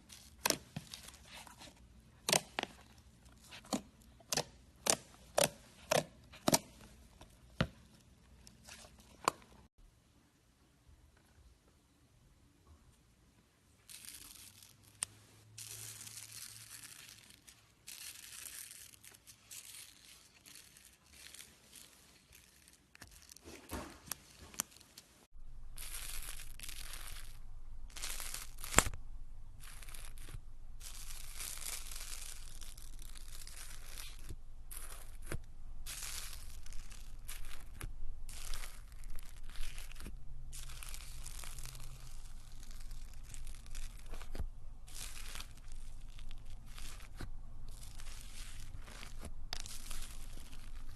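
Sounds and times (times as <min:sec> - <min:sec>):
low steady hum: 0:23.9 - 0:50.9.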